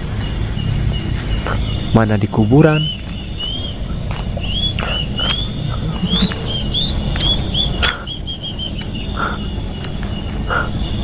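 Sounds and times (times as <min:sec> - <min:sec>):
bird chirping: 0:00.0 - 0:11.0.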